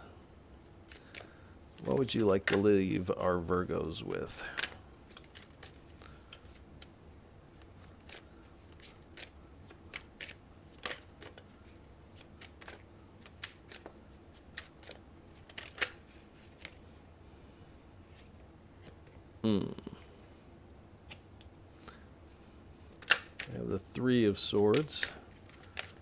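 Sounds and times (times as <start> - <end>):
cards being shuffled: 0.6 - 3.5, 4.2 - 16.8, 22.8 - 26.0.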